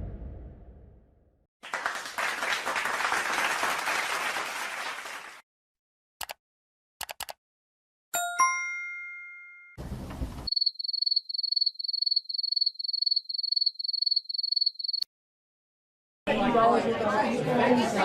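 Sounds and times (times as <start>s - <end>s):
computer mouse clicks: 7.0s - 7.4s
two-note chime: 8.2s - 9.8s
crickets chirping: 10.5s - 15.0s.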